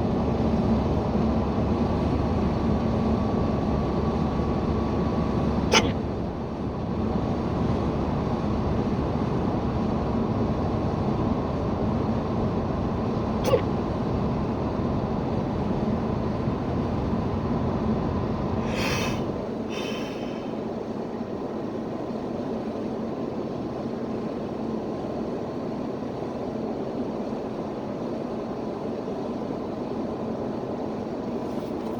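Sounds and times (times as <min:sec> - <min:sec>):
road and engine rumble in car: 0:00.0 - 0:31.9
sharp hiccup: 0:05.7 - 0:06.0, 0:13.4 - 0:13.8.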